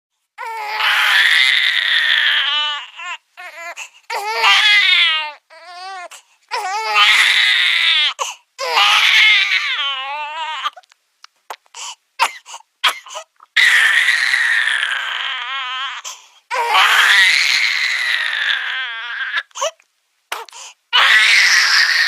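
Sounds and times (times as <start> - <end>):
cartoon baby crying: 13.6 - 19.5, 21.0 - 22.0.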